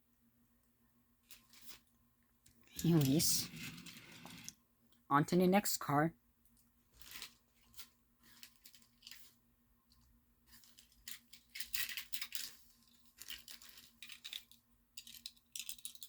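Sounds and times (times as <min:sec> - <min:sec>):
plastic packaging crinkling: 0:01.2 - 0:01.9, 0:02.7 - 0:04.5, 0:06.9 - 0:16.0.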